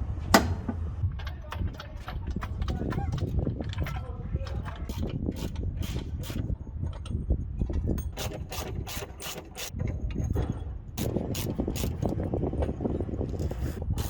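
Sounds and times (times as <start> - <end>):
hand tool rasping clicks: 1.2 - 6.4, 8.0 - 9.7.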